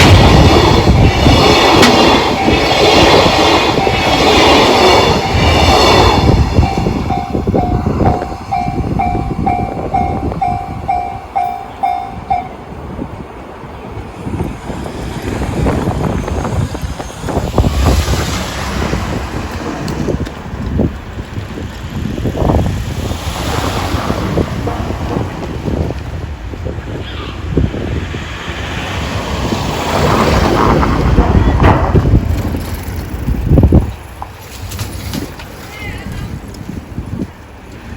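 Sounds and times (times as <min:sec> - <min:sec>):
train wheels clacking: 0:00.0 - 0:12.6
level crossing alarm: 0:00.7 - 0:12.6.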